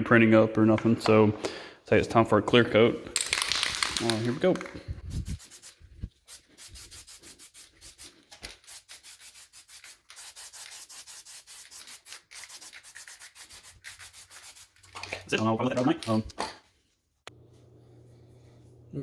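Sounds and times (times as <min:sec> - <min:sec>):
aerosol can rattling when shaken: 0:03.1 - 0:16.2.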